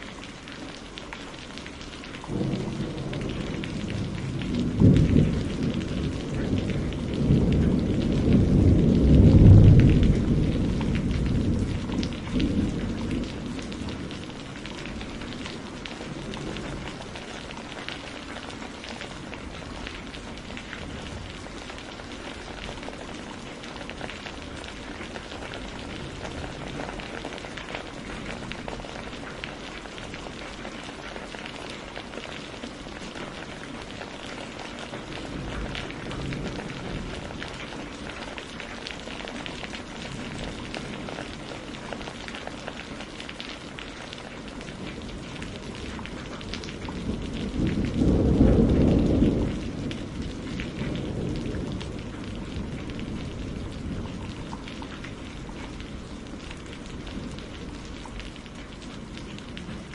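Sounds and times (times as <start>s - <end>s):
steady rain: 0.0s - 59.9s
low roll of thunder: 2.3s - 31.1s, 33.3s - 42.3s, 44.7s - 59.9s.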